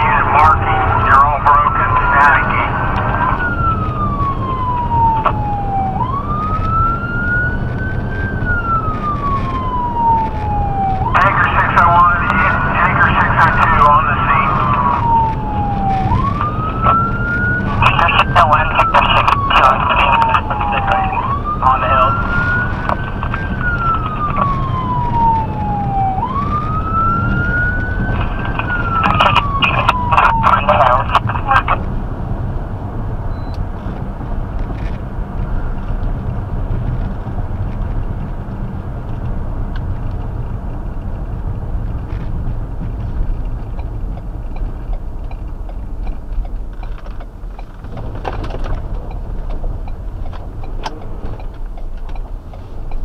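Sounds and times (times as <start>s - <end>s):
emergency siren wailing: 0.0s - 32.9s
road and engine rumble: 0.0s - 53.0s.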